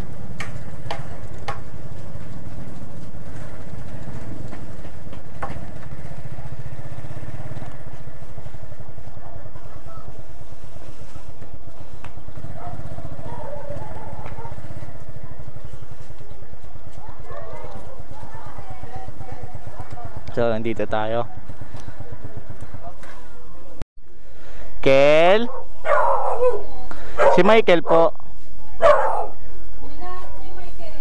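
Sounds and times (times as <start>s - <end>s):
motorcycle engine running: 0.0s - 23.4s.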